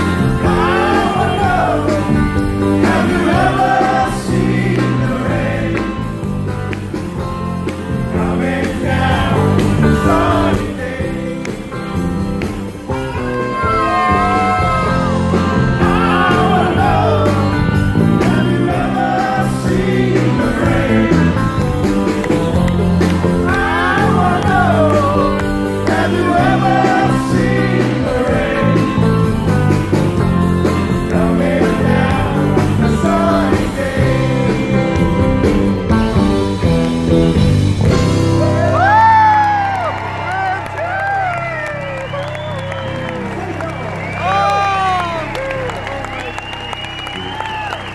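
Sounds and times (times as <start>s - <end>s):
lead singer singing: 0.0s - 6.2s, 8.0s - 12.3s, 13.0s - 30.0s, 30.7s - 35.6s
live rock band playing: 0.0s - 47.9s.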